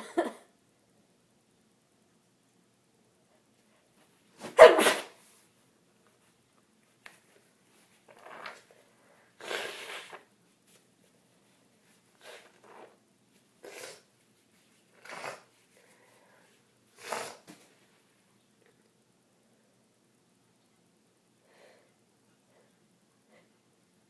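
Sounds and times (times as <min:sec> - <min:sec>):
woman sneezing: 0:04.4 - 0:05.2.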